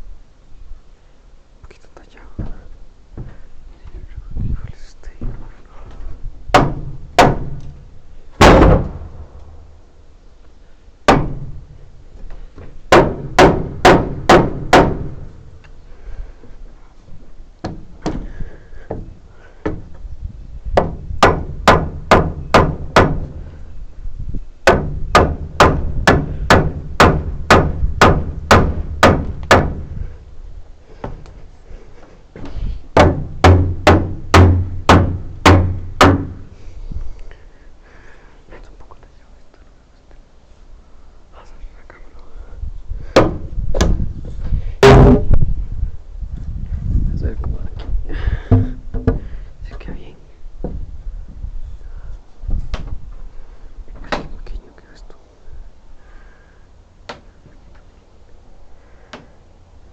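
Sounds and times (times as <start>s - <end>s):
hammer striking wood: 6.5s - 7.8s, 8.4s - 9.1s, 11.1s - 11.6s, 12.9s - 15.3s, 18.9s - 19.9s, 20.8s - 23.4s, 24.6s - 29.9s, 33.0s - 36.5s, 43.2s - 44.0s, 44.8s - 45.3s, 48.5s - 49.3s.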